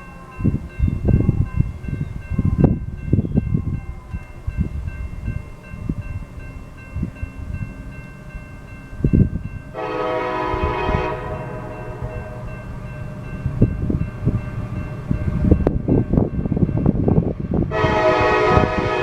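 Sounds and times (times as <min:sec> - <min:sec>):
locomotive air horn blast: 0:09.7 - 0:12.5, 0:17.7 - 0:19.0.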